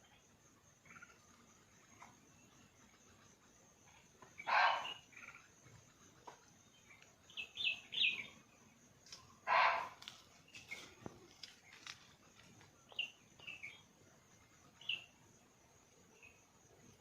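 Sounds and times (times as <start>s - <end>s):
small bird chirping: 0.0s - 15.3s
deer barking: 4.5s - 5.0s, 9.5s - 10.0s.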